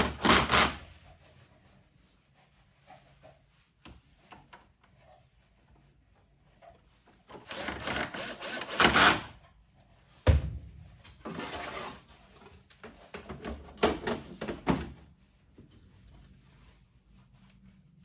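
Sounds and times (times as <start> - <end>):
rubbing and scraping: 10.7 - 15.6.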